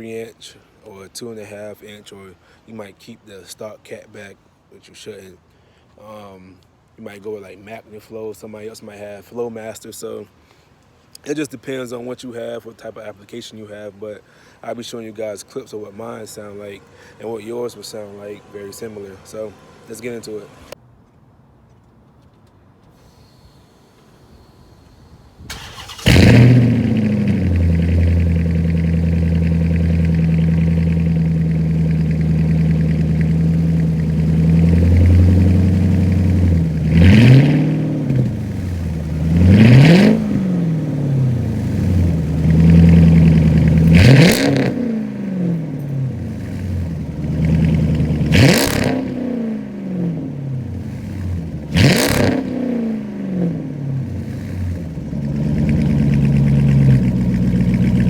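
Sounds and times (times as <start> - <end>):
car engine starting and revving: 16.2 - 20.8, 25.5 - 58.0.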